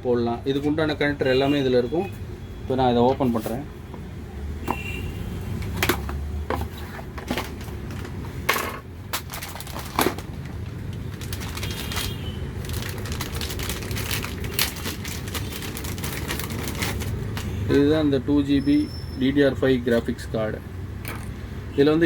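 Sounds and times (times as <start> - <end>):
packaging crackling and rustling: 9.0 - 17.6.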